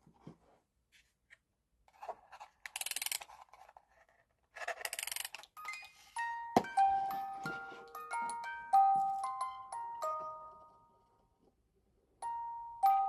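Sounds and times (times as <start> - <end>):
sound toy being handled: 0.0 - 9.5
toy playing chiming electronic tune: 5.6 - 11.1, 12.2 - 13.0.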